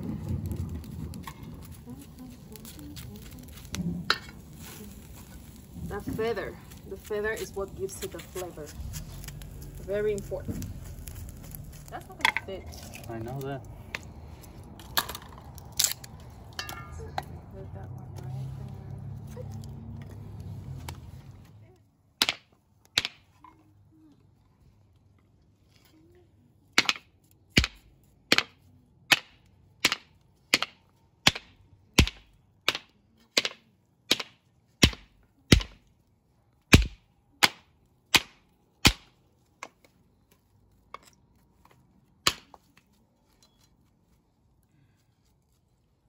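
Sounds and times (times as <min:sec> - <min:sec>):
sharp hard knocks: 0:27.6 - 0:28.5, 0:31.3 - 0:35.8, 0:36.7 - 0:37.6.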